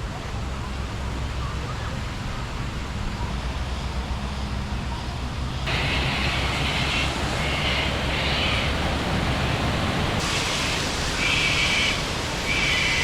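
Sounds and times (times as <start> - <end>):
rain hissing: 5.6 - 13.0
bright hiss: 10.2 - 13.0.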